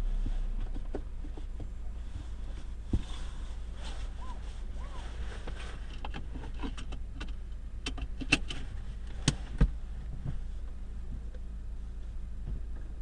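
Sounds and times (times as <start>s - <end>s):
car engine rumbling: 0.0s - 13.0s
engine knocks and clunks: 0.0s - 13.0s.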